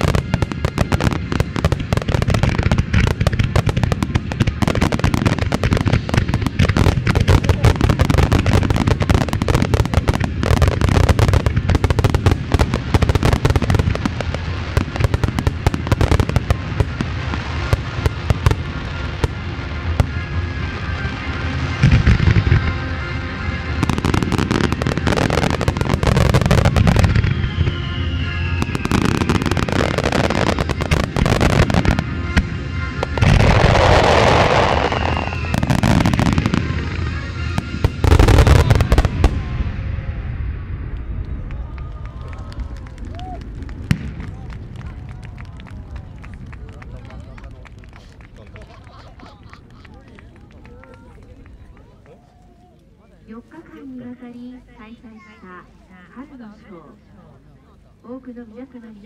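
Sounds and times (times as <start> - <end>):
music: 0.0 - 7.0, 14.8 - 39.3
fireworks booms: 0.0 - 20.2, 23.7 - 48.6
fireworks crackling and popping: 0.0 - 56.7
falling whistles: 26.9 - 30.1, 33.9 - 36.2.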